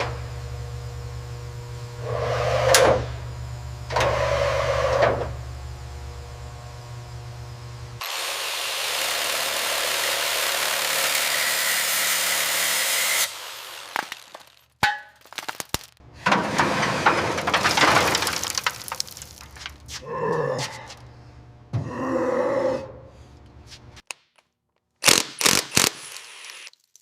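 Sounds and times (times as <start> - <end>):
power tool hissing and grinding: 8.0 - 14.6, 25.1 - 26.7.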